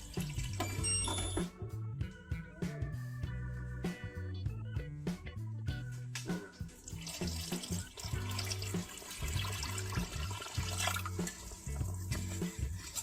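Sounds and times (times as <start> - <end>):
running water splashing: 0.0 - 0.8, 6.8 - 13.0
background music with bass: 0.0 - 13.0.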